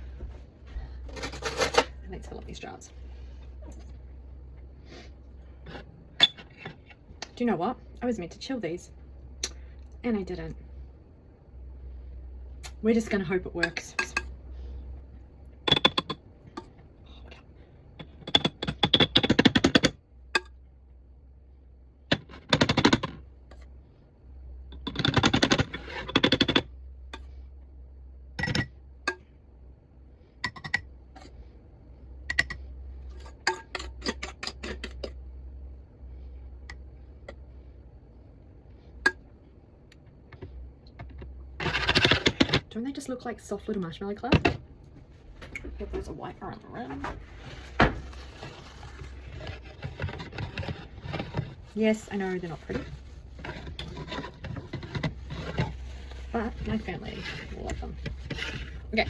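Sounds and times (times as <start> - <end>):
low steady hum: 0.0 - 59.0
spoon scraping a bowl: 41.6 - 42.6, 47.3 - 59.0.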